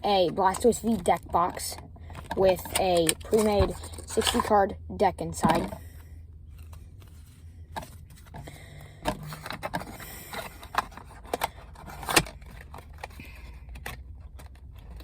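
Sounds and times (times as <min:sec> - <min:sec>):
cards scraping and clicking: 0:00.2 - 0:04.6, 0:06.5 - 0:15.0.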